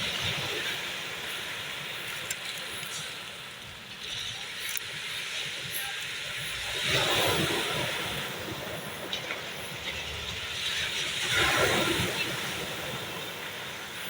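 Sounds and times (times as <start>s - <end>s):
sea surf rushing: 0.0s - 14.0s
wave breaking: 4.1s - 13.9s.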